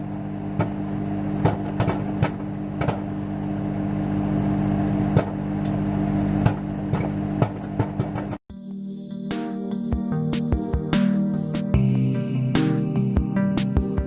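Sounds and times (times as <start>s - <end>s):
microwave oven humming: 0.0s - 8.4s.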